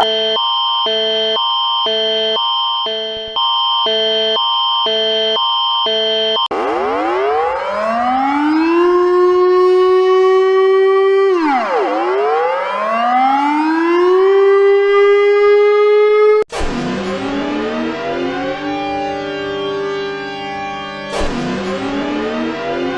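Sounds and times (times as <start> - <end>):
tones sliding down together: 0.0 - 4.3
civil defense siren wailing: 5.9 - 22.9.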